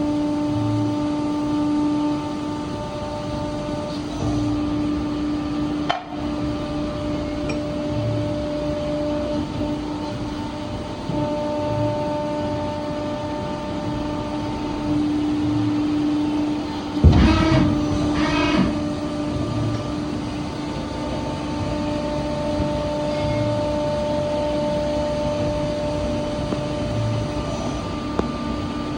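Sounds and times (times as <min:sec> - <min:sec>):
broaching machine humming: 0:00.0 - 0:28.9
short squeals: 0:17.1 - 0:18.8.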